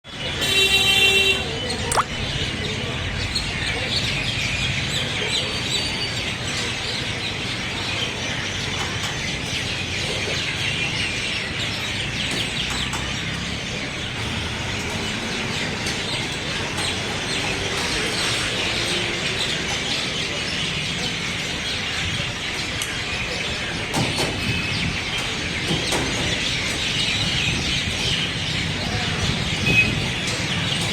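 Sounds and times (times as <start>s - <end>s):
road traffic rumble: 0.1s - 30.9s
birds chirping and calling: 1.6s - 30.9s
brief pitched tone: 1.9s - 2.6s.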